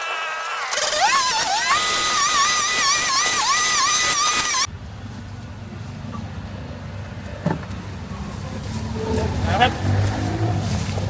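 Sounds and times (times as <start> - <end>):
high motor whine: 0.0 - 4.7
low engine rumble: 4.7 - 11.0.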